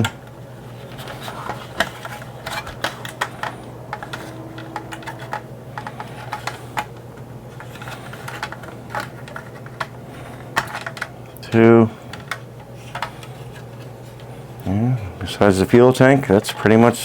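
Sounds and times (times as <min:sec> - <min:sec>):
steady low hum: 0:00.0 - 0:17.0
plastic toy parts clicking: 0:01.8 - 0:07.0.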